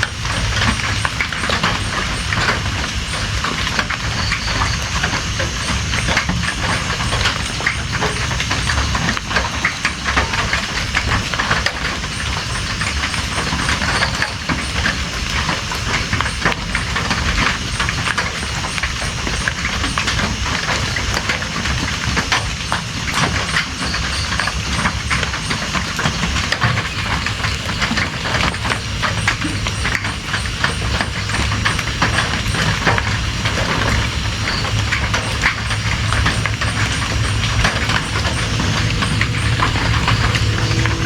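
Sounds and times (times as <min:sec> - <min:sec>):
steady rain patter: 0:00.0 - 0:41.0
low rumble: 0:36.9 - 0:41.0.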